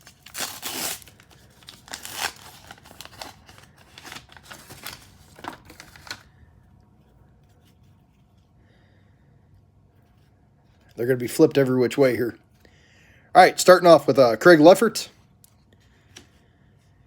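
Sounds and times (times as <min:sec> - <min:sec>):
cards rustling: 0:00.0 - 0:06.3
wrapper crinkling and tearing: 0:00.0 - 0:06.3.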